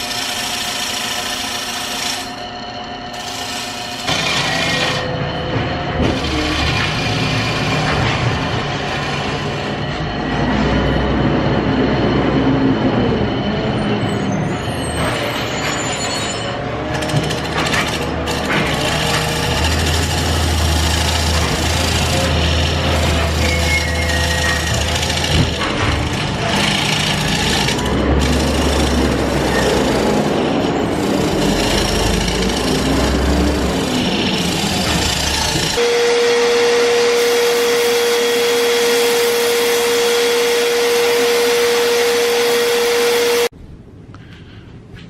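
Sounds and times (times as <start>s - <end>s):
gouge cutting wood: 0.0s - 2.3s, 3.2s - 5.1s, 16.9s - 35.8s
turning tool scraping wood: 0.0s - 2.4s, 3.1s - 5.1s, 16.9s - 35.8s
lathe motor hum: 0.0s - 11.9s, 16.8s - 43.5s.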